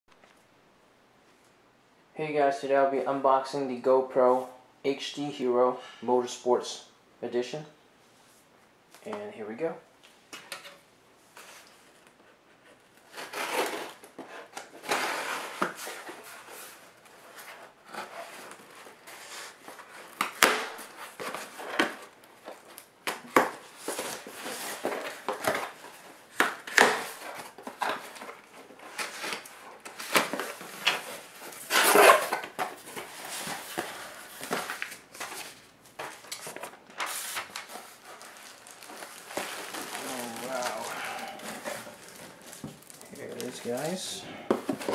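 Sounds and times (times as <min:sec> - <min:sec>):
packaging clicking and rustling: 0:11.4 - 0:44.9.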